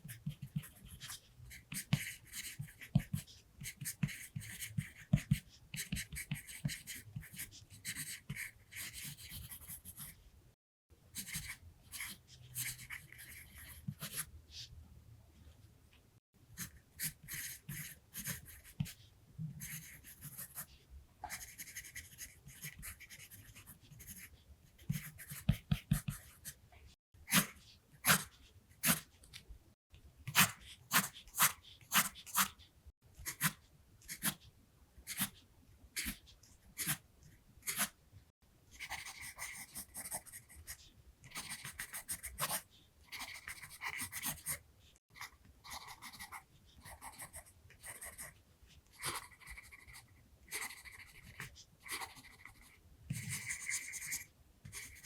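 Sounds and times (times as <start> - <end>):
pencil scratching on paper: 0.0 - 10.2, 11.2 - 14.3, 16.6 - 19.0, 19.6 - 26.6, 27.3 - 29.1, 30.3 - 32.6, 38.7 - 44.6, 45.2 - 55.0.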